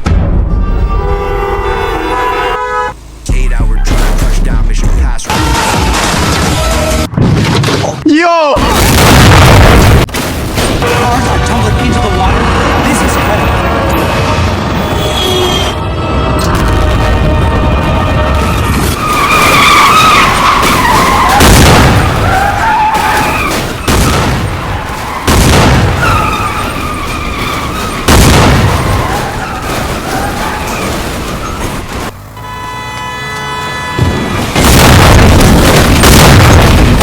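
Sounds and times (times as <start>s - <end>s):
heavy crash: 8.6s - 32.4s, 34.0s - 37.0s
loud crashing rumble: 8.7s - 32.3s, 34.0s - 37.0s
tyres screeching: 10.8s - 15.8s, 17.8s - 34.6s.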